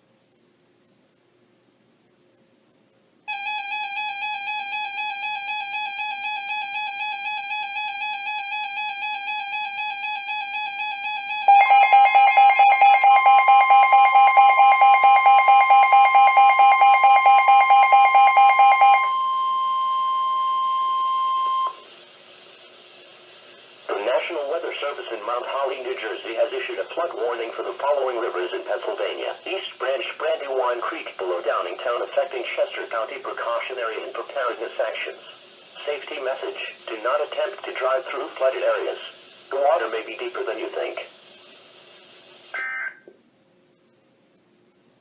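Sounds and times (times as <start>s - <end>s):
warbling electronic alarm: 3.3s - 21.8s
steady warning alarm tone: 3.3s - 21.9s
rapid beeping: 10.4s - 21.7s.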